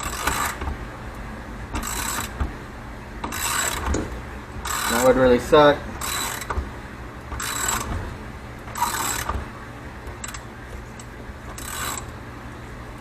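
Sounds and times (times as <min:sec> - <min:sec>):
ratchet cranking: 0:00.0 - 0:00.6, 0:01.8 - 0:02.4, 0:03.2 - 0:04.0, 0:04.6 - 0:05.2, 0:06.0 - 0:06.6, 0:07.3 - 0:08.0, 0:08.7 - 0:09.4, 0:10.2 - 0:10.4, 0:11.5 - 0:12.1.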